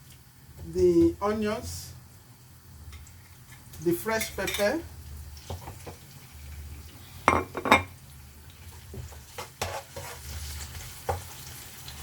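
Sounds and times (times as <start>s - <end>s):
spoon scraping frying pan: 8.7s - 11.6s.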